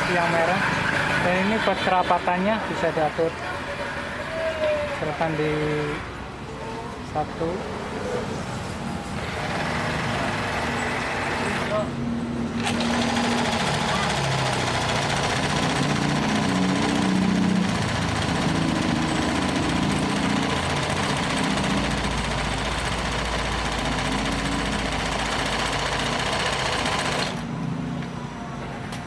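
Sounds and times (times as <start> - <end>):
sewing machine running: 9.2 - 11.8, 12.6 - 27.4.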